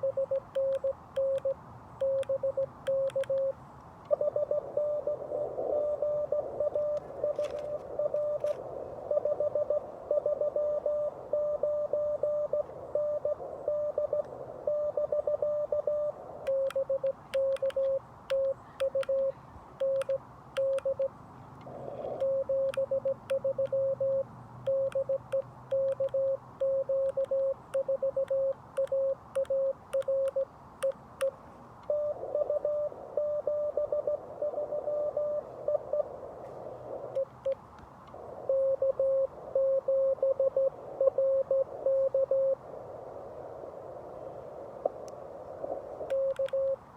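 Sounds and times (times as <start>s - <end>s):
morse sidetone: 0.0s - 5.2s, 5.8s - 21.1s, 22.2s - 31.0s
received morse code tone: 0.0s - 21.1s, 22.2s - 31.0s, 31.9s - 36.2s, 38.5s - 42.6s, 46.1s - 46.8s
radio band noise: 4.1s - 20.1s, 31.9s - 37.5s, 38.1s - 46.9s.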